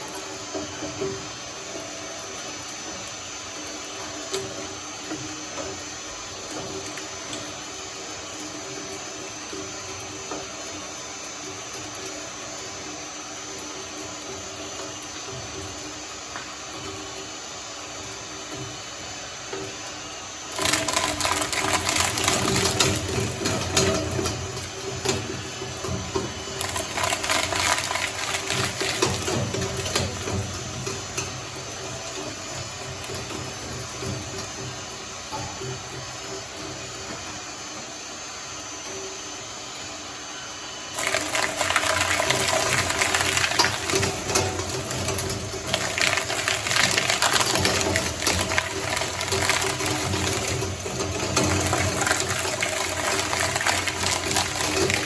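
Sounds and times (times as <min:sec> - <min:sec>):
shredder humming: 0:20.4 - 0:37.3, 0:40.9 - 0:55.0
crunching in shredder blades: 0:26.5 - 0:30.3, 0:41.0 - 0:55.0.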